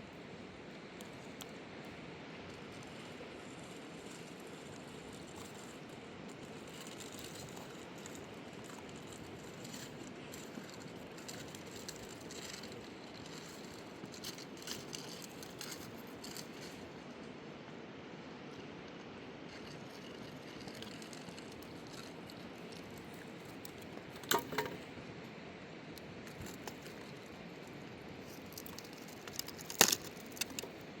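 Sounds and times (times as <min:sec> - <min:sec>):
small clicks and rattles: 0:02.5 - 0:16.9, 0:19.5 - 0:25.0, 0:26.0 - 0:30.9.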